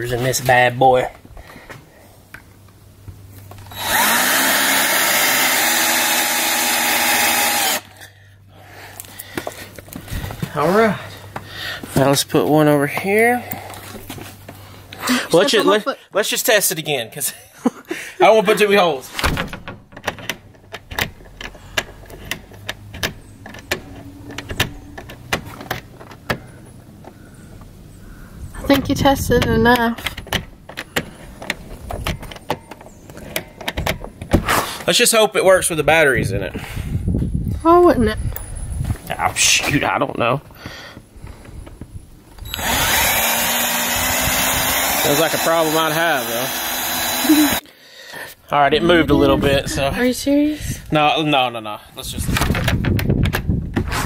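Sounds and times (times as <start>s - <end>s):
power drill whine: 3.7s - 7.9s, 42.4s - 47.6s.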